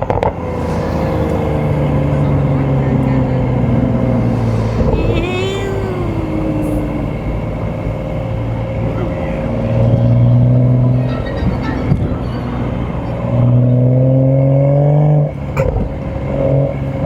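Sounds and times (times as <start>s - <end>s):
car engine drone from inside cabin: 0.0s - 17.0s
wavering voice-like tone: 0.4s - 13.8s.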